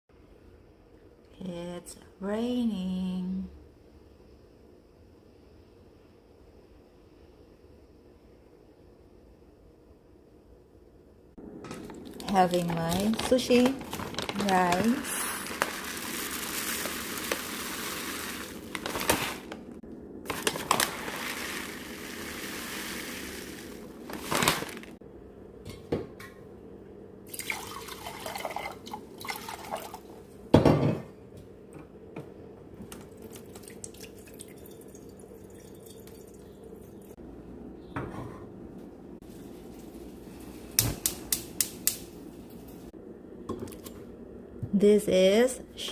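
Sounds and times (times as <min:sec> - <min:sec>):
dishes clinking and knocking: 0:30.5 - 0:31.2
water running and dripping: 0:33.0 - 0:37.2.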